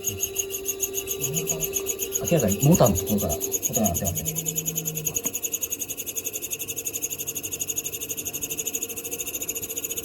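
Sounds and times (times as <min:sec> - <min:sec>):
washing machine motor squealing: 0:00.0 - 0:10.0
faint low hum: 0:01.2 - 0:05.3.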